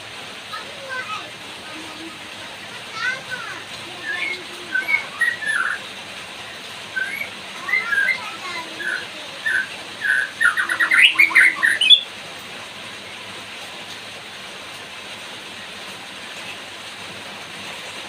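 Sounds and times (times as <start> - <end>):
rain hiss: 0.0 - 18.0
bird whistling song: 4.0 - 5.9, 6.9 - 12.1.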